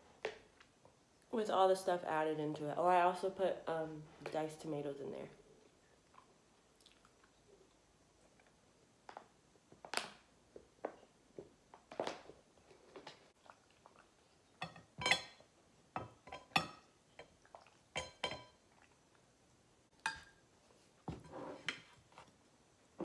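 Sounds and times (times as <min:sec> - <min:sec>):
cutlery clinking on a bowl: 0:14.6 - 0:17.4, 0:18.0 - 0:18.6, 0:20.0 - 0:20.4.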